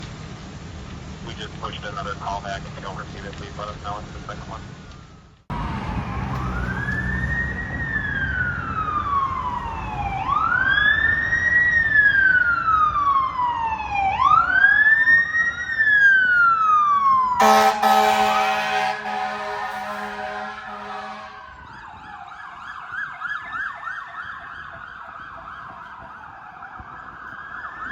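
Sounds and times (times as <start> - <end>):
siren wailing: 4.0 - 27.9
fire truck air horn blast: 17.4 - 21.6.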